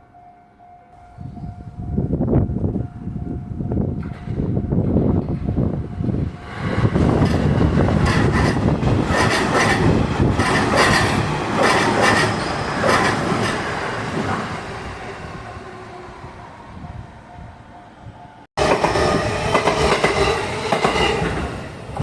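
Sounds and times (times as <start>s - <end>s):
train wheels clacking: 6.5s - 14.4s, 18.6s - 22.0s.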